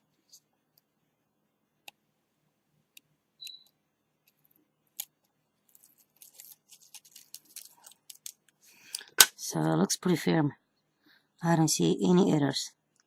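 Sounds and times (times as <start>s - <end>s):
tape being peeled crackling: 4.2s - 8.6s.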